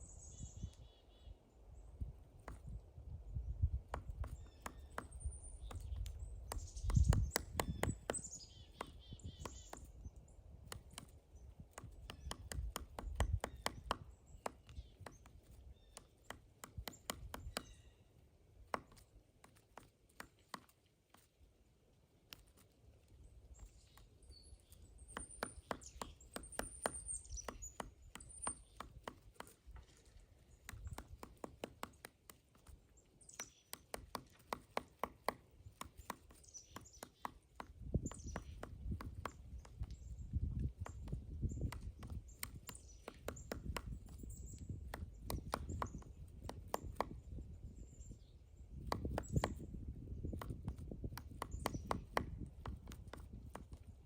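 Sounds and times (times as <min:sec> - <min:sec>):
woodpecker knocking on wood: 0:02.4 - 0:02.8, 0:03.6 - 0:17.9, 0:18.5 - 0:21.3, 0:23.6 - 0:54.0.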